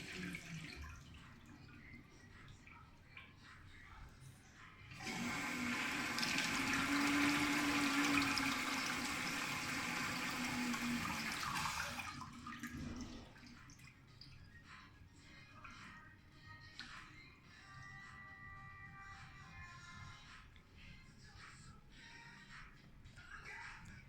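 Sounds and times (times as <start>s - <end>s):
urinal flushing: 0.0s - 3.4s, 4.9s - 14.6s.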